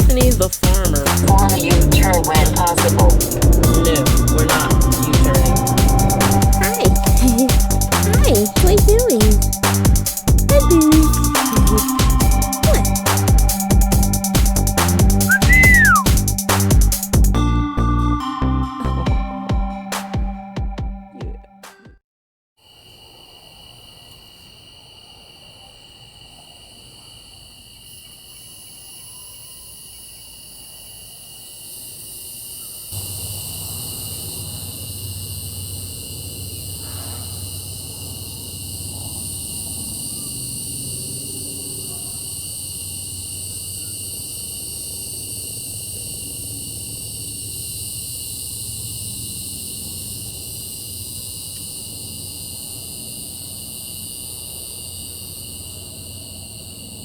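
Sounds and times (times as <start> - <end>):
cicadas trilling: 0.0 - 17.4, 22.6 - 57.0
low hum: 0.0 - 18.5.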